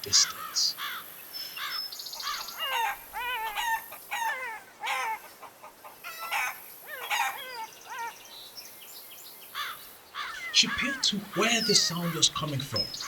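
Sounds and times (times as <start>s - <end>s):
animal calls: 0.0s - 8.6s, 9.5s - 13.0s
high chirps: 10.4s - 13.0s.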